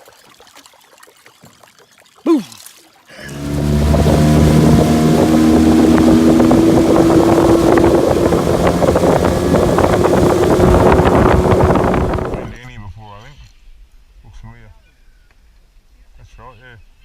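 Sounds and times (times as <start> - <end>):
motorboat engine running: 3.1 - 12.6
wind buffeting microphone: 3.3 - 12.6.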